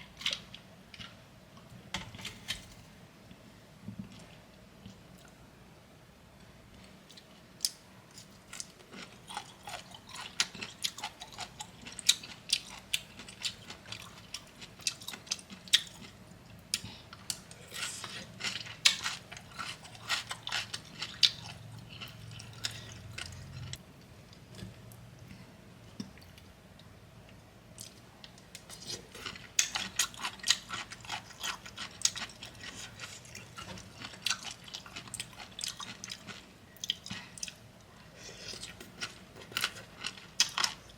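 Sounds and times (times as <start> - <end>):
crunchy chewing: 28.6 - 37.6.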